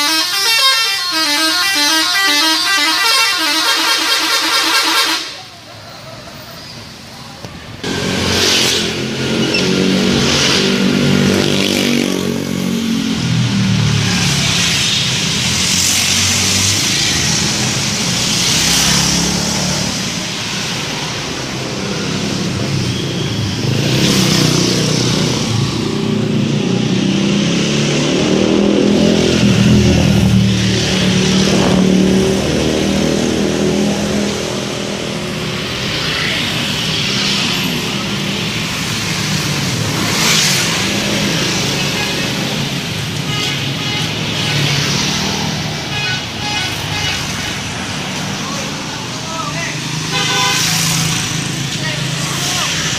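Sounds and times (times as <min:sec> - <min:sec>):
road noise: 0:00.0 - 0:52.9.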